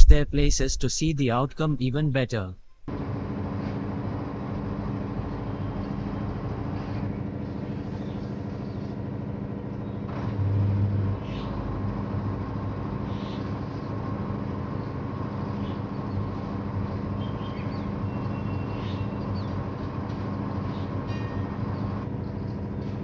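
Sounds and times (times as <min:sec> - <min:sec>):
washing machine spinning: 0:02.8 - 0:23.0.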